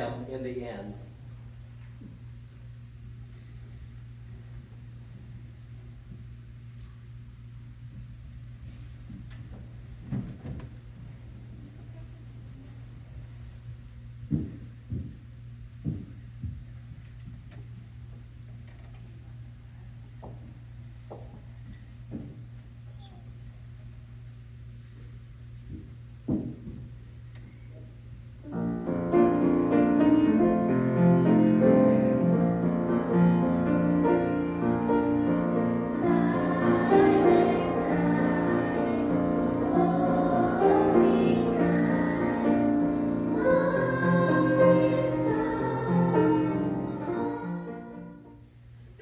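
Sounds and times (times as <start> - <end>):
piano accompaniment: 28.4 - 48.4
people singing: 28.5 - 48.2.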